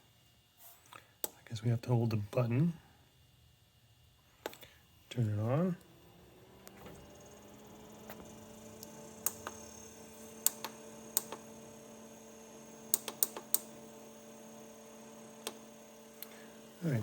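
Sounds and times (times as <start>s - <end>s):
fridge compressor humming: 1.0s - 17.0s.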